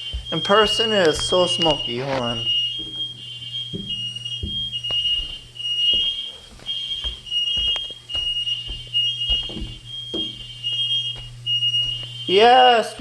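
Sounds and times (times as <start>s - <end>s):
smoke alarm beeping: 0.0s - 13.0s
knocks: 2.8s - 3.1s, 3.7s - 11.3s.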